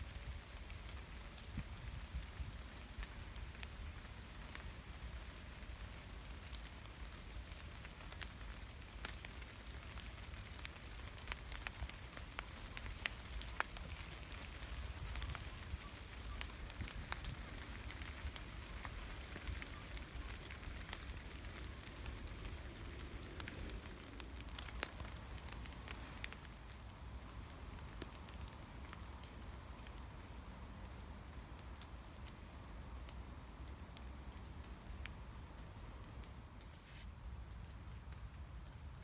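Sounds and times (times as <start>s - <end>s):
rainfall hiss: 0.0s - 37.0s
rain drips ticking: 0.1s - 36.7s
low steady rumble: 17.0s - 27.8s.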